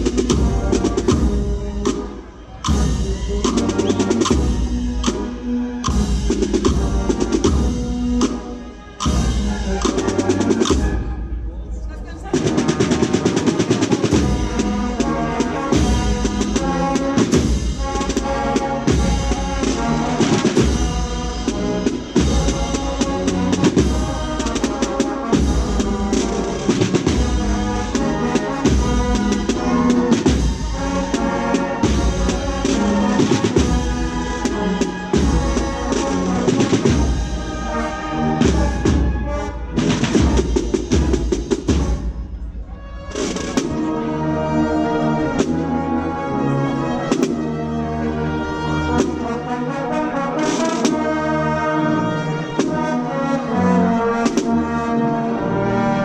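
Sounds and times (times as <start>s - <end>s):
snare drums: 0.0s - 11.4s, 12.2s - 44.2s, 45.2s - 46.4s, 47.0s - 47.5s, 48.8s - 51.7s, 52.4s - 55.0s
marching band playing slow march: 0.0s - 56.0s
bass drum beat: 20.6s - 37.5s.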